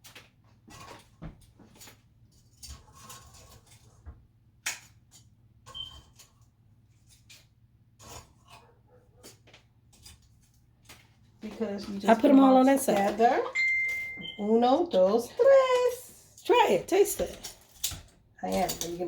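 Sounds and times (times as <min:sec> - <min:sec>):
chicken wings scraping in a dish: 0:02.7 - 0:04.0, 0:08.0 - 0:08.7.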